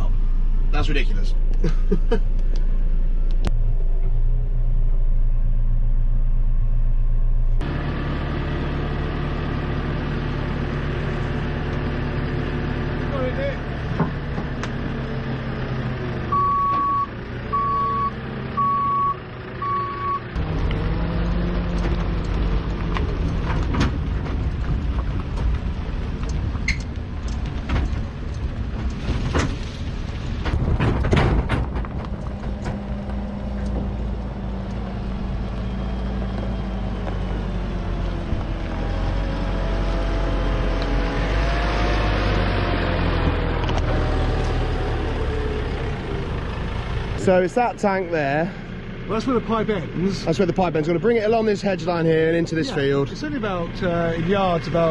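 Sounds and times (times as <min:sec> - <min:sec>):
diesel engine running: 0:00.0 - 0:54.9
reversing alarm beeping: 0:16.3 - 0:20.3
knocks and rattles: 0:21.7 - 0:34.2.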